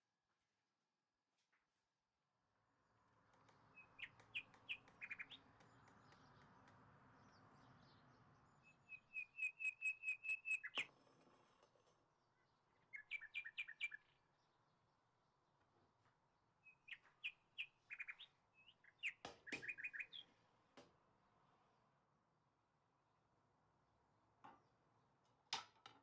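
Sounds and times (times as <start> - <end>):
songbirds chirping: 3.1 - 21.5.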